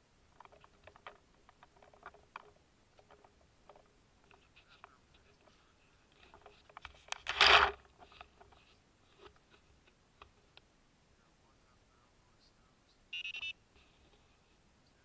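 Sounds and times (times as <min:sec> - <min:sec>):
paintball hopper clicks and rattles: 0:00.3 - 0:04.4, 0:06.2 - 0:08.6.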